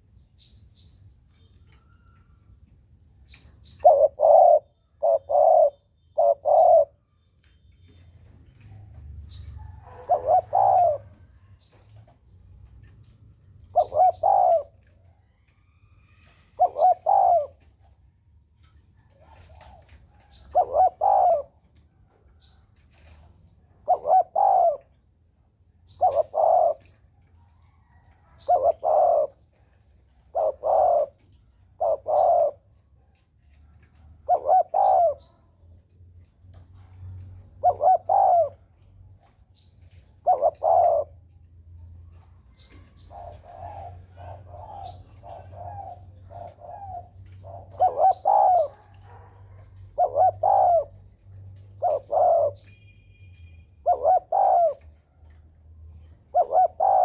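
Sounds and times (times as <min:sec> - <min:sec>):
dove cooing: 0:03.2 - 0:07.1, 0:08.6 - 0:18.0, 0:18.7 - 0:21.8, 0:22.4 - 0:25.1, 0:25.8 - 0:35.6, 0:36.5 - 0:57.0
high bird chirps: 0:52.5 - 0:54.7.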